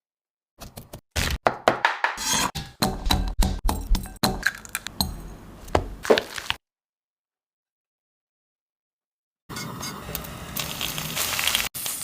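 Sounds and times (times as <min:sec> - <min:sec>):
kitchenware clinking: 0:02.6 - 0:05.9.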